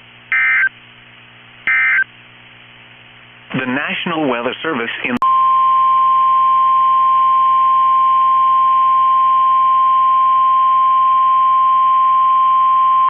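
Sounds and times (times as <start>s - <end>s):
loud high alarm tone: 0.3s - 0.7s, 1.7s - 2.0s.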